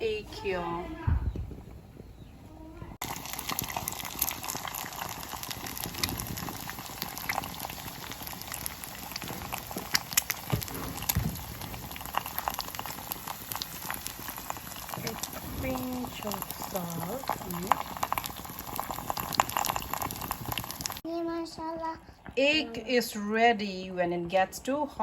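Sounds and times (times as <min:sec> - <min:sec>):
egg sizzling in hot oil: 0:03.0 - 0:21.1
oil crackling pops: 0:03.0 - 0:22.4.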